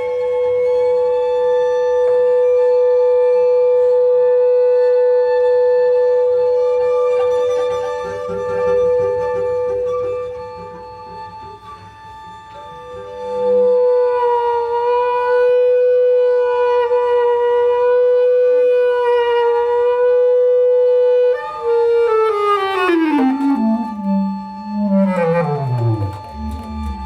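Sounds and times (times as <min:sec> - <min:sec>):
sustained reedy note: 0:21.2 - 0:27.0.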